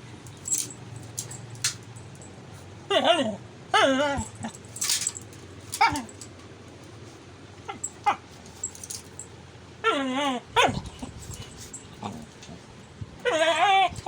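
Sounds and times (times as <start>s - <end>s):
dog yelping: 2.9s - 4.6s, 5.7s - 6.2s, 7.6s - 8.3s, 9.8s - 12.3s, 13.2s - 14.0s
dog whining: 2.9s - 4.7s, 5.7s - 6.2s, 7.6s - 9.0s, 9.8s - 14.0s.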